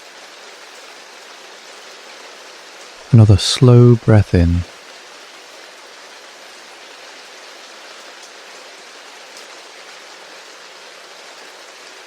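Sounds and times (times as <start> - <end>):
rain falling on a surface: 0.0 - 12.0
faint raindrop ticks: 8.0 - 8.4, 9.2 - 10.1.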